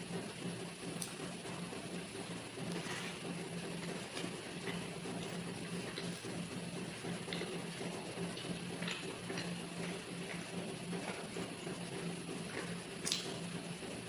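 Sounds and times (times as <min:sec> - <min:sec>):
wet chewing: 0:03.8 - 0:06.4, 0:07.0 - 0:11.3, 0:12.4 - 0:13.3.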